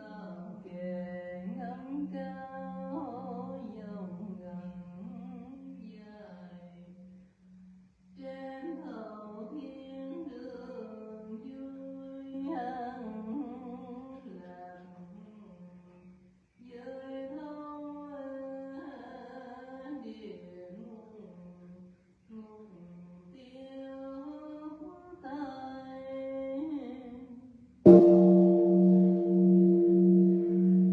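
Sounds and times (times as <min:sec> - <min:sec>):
steady low hum: 0:27.9 - 0:30.9.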